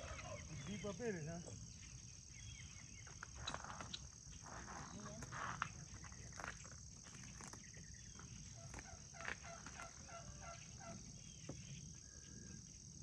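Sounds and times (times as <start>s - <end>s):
high buzz of insects: 0.0s - 13.0s
rustling corn stalks and leaves: 3.1s - 10.1s.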